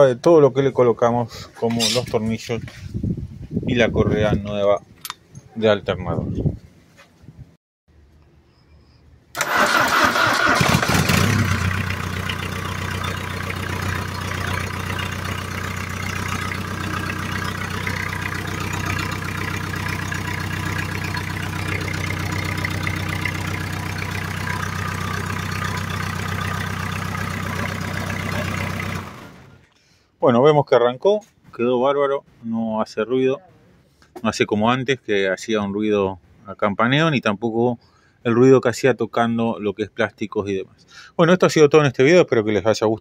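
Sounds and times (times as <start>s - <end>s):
car engine starting and idling: 9.3s - 29.7s.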